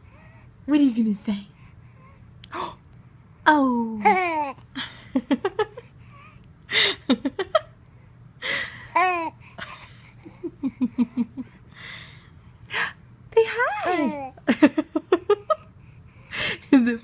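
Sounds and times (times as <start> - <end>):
wheezy breathing: 0.0 - 0.6, 1.5 - 3.4, 5.7 - 7.1, 7.8 - 13.2, 15.4 - 16.7
baby cooing and giggling: 4.0 - 4.6, 9.0 - 10.4, 13.8 - 14.4.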